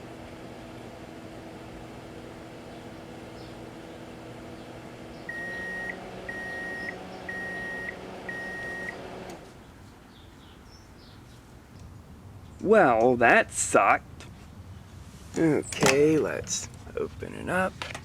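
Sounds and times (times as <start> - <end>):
microwave oven humming: 0.0 - 9.4
microwave beeping: 5.2 - 9.4.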